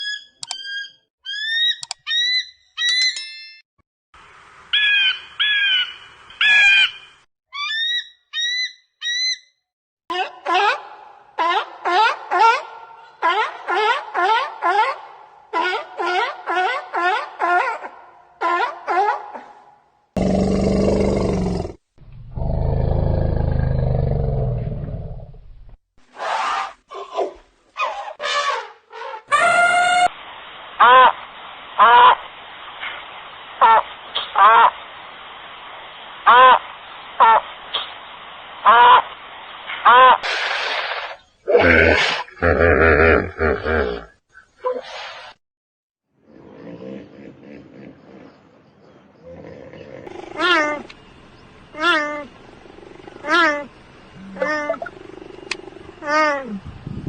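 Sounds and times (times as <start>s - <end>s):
large animal roaring: 20.2s - 25.4s, 49.3s - 50.7s, 52.6s - 53.4s, 54.2s - 56.1s
hissy background: 30.2s - 39.9s, 47.8s - 57.0s
animal high-pitched calls: 50.1s - 50.9s, 51.8s - 56.6s.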